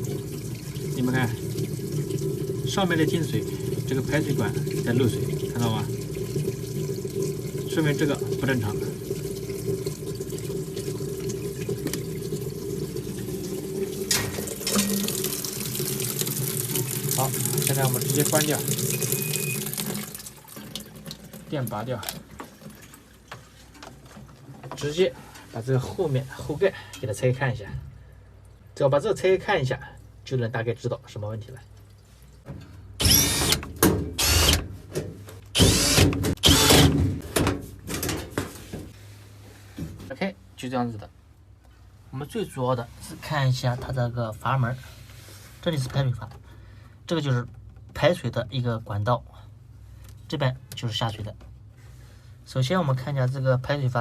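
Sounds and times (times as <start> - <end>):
electric screwdriver whirring: 33.0 - 33.6, 34.2 - 34.6, 35.6 - 37.0.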